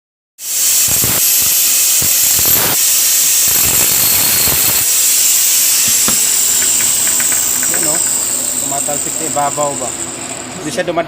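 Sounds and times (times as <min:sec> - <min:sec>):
welding charge hissing fizz: 0:00.4 - 0:10.6
crackles and pops: 0:00.8 - 0:07.5.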